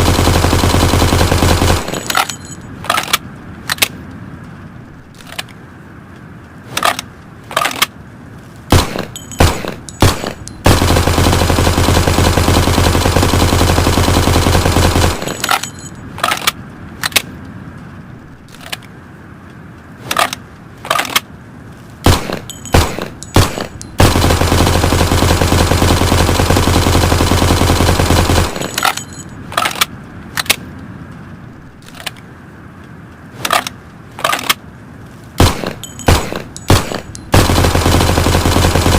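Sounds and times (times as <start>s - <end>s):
submachine gun firing: 0.0s - 2.4s, 8.7s - 15.7s, 22.0s - 29.2s, 35.4s - 38.9s.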